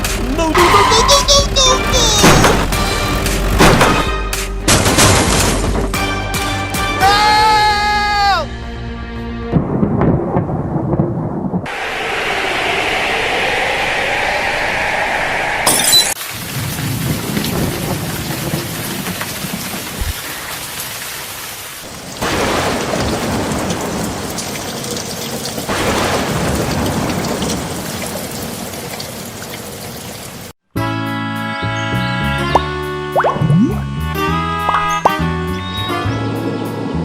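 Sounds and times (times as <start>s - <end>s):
music: 0.0s - 9.8s, 30.7s - 37.0s
rolling thunder: 9.5s - 15.3s, 16.3s - 20.2s, 21.9s - 29.6s
steady rain: 16.2s - 30.6s.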